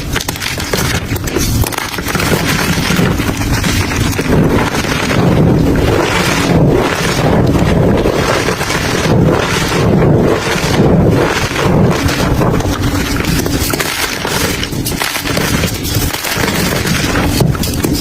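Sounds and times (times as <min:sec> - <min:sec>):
dry material crunching: 0:00.0 - 0:18.0.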